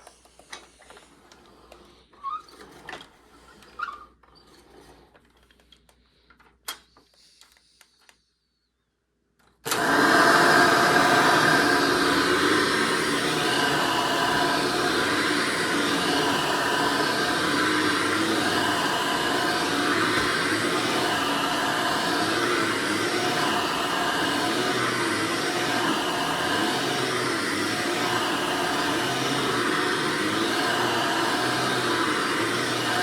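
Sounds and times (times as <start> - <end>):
upright vacuum cleaner running: 9.6 - 33.0.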